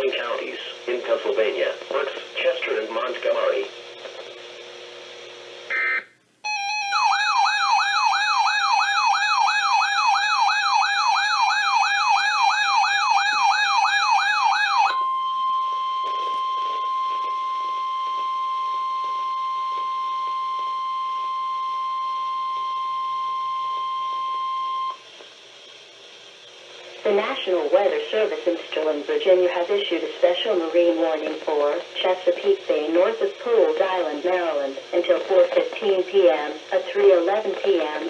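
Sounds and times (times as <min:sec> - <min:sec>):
steady alarm tone: 0:05.7 - 0:25.1.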